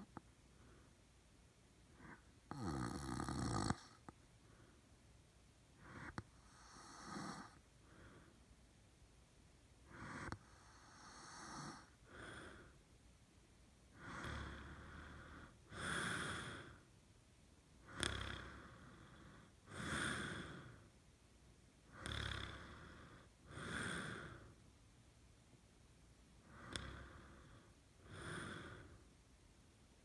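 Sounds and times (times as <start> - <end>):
man snoring: 2.0 - 4.0, 5.8 - 7.6, 9.9 - 12.6, 14.0 - 16.8, 17.9 - 19.1, 19.7 - 20.8, 21.9 - 24.5, 26.5 - 28.9
soft breath out: 5.8 - 8.5, 22.5 - 24.6, 26.4 - 29.1.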